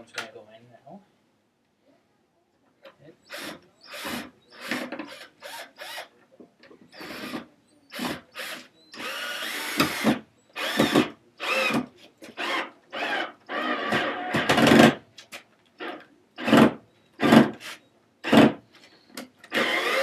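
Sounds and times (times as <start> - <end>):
power drill driving screw into wood: 3.3 - 6.1, 7.0 - 15.0, 15.8 - 18.6, 19.5 - 20.0.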